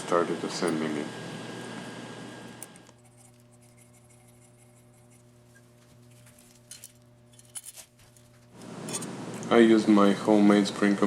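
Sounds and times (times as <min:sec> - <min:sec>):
faint steady hum: 0:00.0 - 0:11.0.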